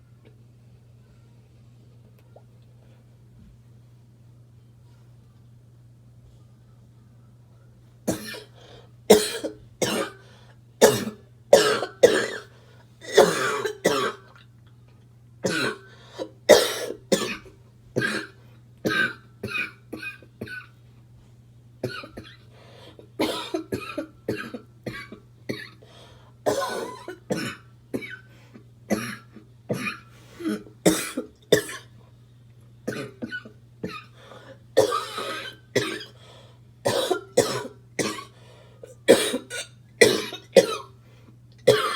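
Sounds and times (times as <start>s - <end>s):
harsh barking cough: 9.1s - 10.2s, 10.8s - 12.5s, 13.1s - 14.2s, 15.5s - 20.7s, 23.2s - 25.8s, 26.5s - 28.2s, 28.9s - 31.9s, 36.8s - 38.3s, 39.1s - 40.9s, 41.7s - 41.9s.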